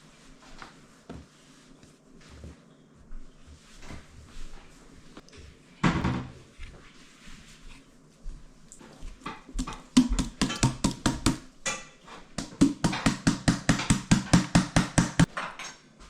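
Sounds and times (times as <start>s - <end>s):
rapid sharp knocks: 10.0s - 11.4s, 12.4s - 15.3s.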